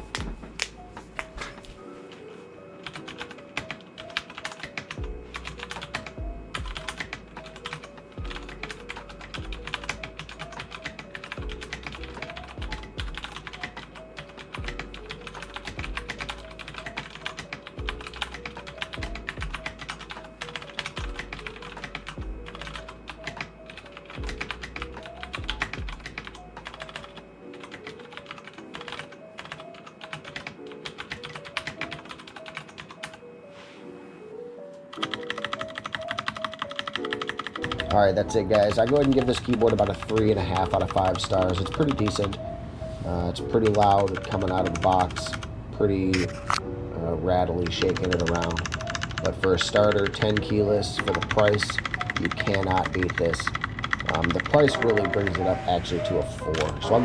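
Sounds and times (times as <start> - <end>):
fast mechanical keyboard typing: 2.8 - 33.2, 34.9 - 42.4, 43.5 - 46.6, 47.6 - 57.0
background music with bass: 5.0 - 7.5, 21.0 - 23.4, 54.3 - 57.0.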